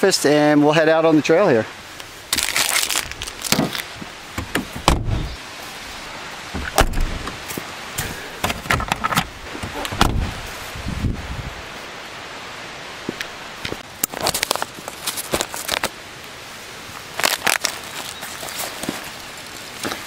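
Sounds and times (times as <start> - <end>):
bags and items being handled: 2.0 - 5.4, 13.7 - 16.0, 16.8 - 20.0
car door thuds: 4.4 - 5.4, 6.5 - 7.4, 8.4 - 10.3.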